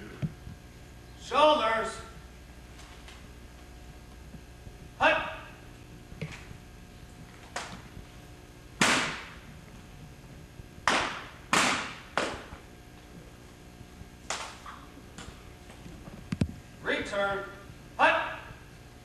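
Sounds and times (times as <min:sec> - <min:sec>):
echoing rifle cracks: 0:08.8 - 0:09.4.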